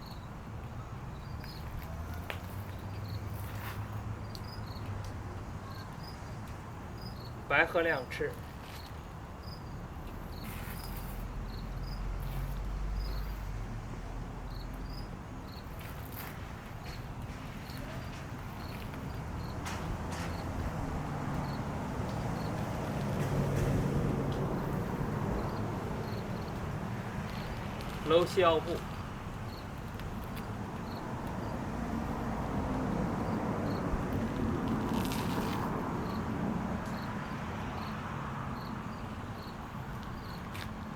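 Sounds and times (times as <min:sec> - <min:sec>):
crickets chirping: 0:00.0 - 0:05.0, 0:05.6 - 0:07.6, 0:08.4 - 0:34.2, 0:34.9 - 0:40.9.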